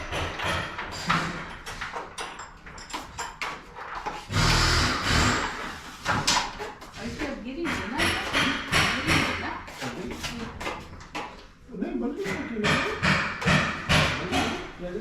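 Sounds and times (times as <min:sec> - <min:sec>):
garage door rolling rumble: 0:00.0 - 0:02.8
clicks and knocks on hardware: 0:00.0 - 0:04.3.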